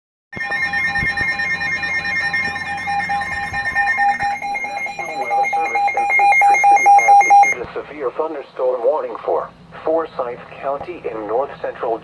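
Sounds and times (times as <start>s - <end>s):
weather radio alarm beeping: 0.4s - 7.6s
person reading a warning: 4.3s - 8.5s.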